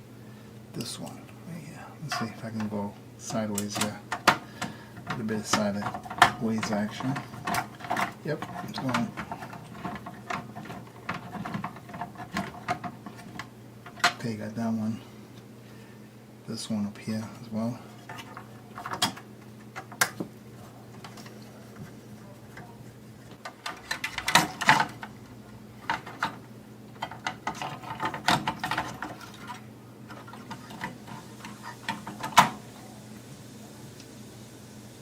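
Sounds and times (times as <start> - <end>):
faint steady hum: 0.0 - 35.0
plastic parts rattling: 5.0 - 14.2, 27.0 - 31.2.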